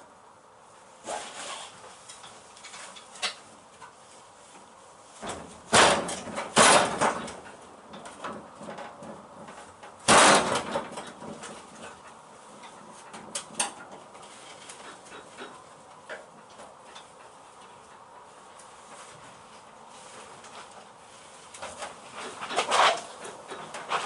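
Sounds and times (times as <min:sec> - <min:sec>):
sheet metal scraping and knocking: 0:05.2 - 0:17.3.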